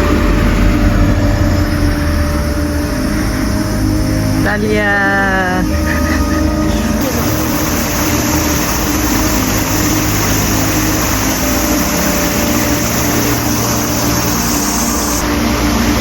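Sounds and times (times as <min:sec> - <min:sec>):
low hum: 0:00.0 - 0:16.0
loud rushing noise: 0:07.0 - 0:16.0.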